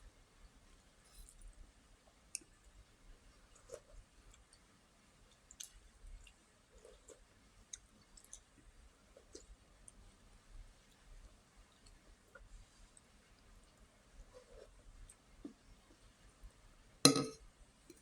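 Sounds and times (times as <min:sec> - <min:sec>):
person chewing food: 0:05.3 - 0:10.0.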